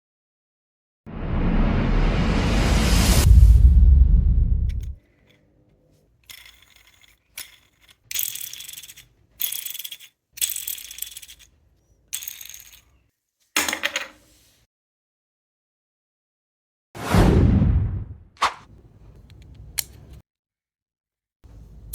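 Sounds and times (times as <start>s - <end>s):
plastic fidget toy clicking: 7.4s - 11.5s.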